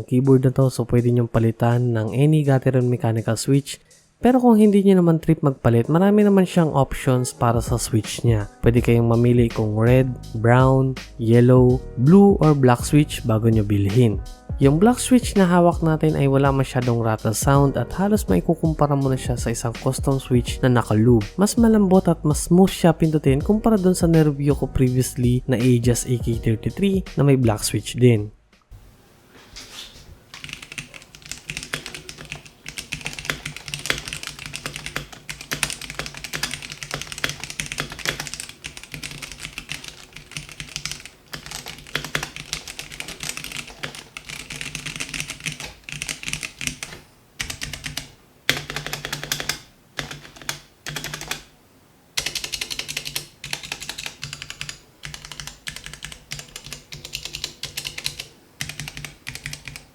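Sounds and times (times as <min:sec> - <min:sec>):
mechanical keyboard typing: 0:30.4 - 0:51.5, 0:52.2 - 0:59.9.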